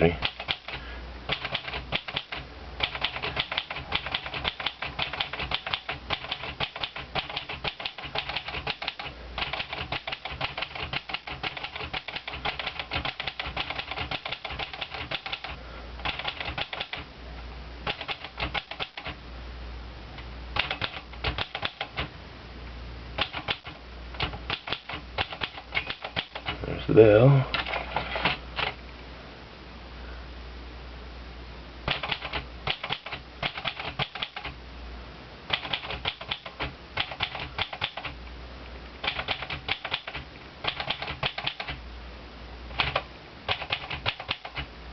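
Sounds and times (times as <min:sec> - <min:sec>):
typewriter keys clacking: 0:00.0 - 0:17.0, 0:17.9 - 0:19.2, 0:20.6 - 0:22.1, 0:23.2 - 0:26.6, 0:31.9 - 0:34.5, 0:35.5 - 0:38.2, 0:39.0 - 0:41.8, 0:42.8 - 0:44.7.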